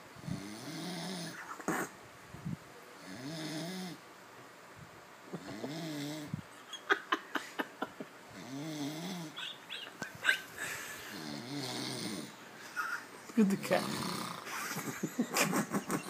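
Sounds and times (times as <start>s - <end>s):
man snoring: 0.3s - 1.4s, 3.0s - 4.0s, 5.4s - 6.3s, 8.4s - 9.4s, 11.1s - 12.4s, 13.7s - 14.5s.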